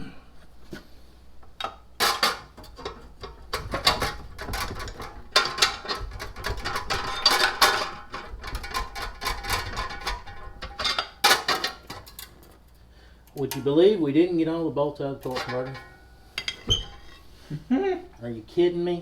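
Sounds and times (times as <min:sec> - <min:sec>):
metallic clanks of hand tools: 0:01.6 - 0:12.6, 0:15.2 - 0:17.2.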